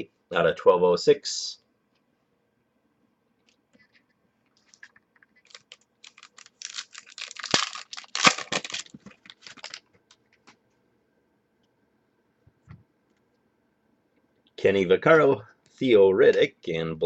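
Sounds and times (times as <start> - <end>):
card pack crinkling and tearing: 4.7 - 9.8.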